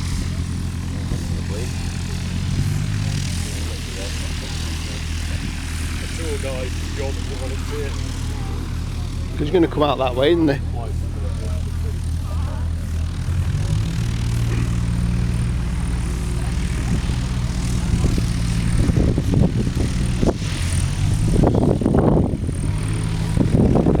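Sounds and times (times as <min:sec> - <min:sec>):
propeller aircraft engine running: 0:00.0 - 0:24.0.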